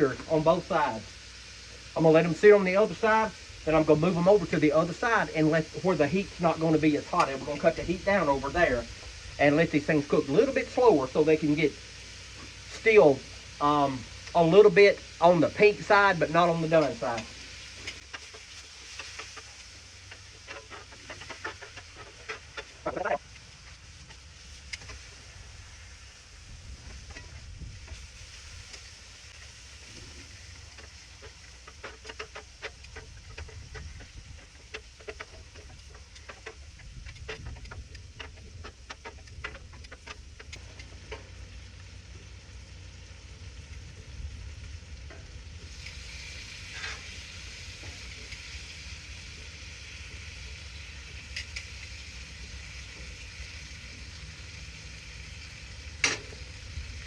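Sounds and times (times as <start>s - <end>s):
steaks sizzling on a grill: 0.0s - 57.0s
cooking utensil clicks and scrapes: 16.6s - 25.1s, 27.0s - 41.4s, 45.0s - 48.8s, 49.4s - 52.1s.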